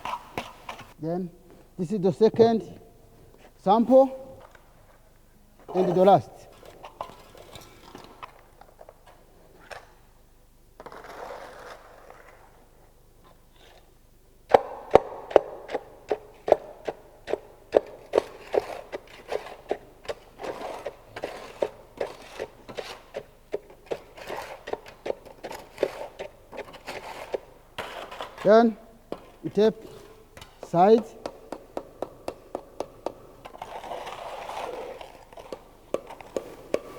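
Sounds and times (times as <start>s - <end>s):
scrape on metal mould: 18.2s - 23.2s.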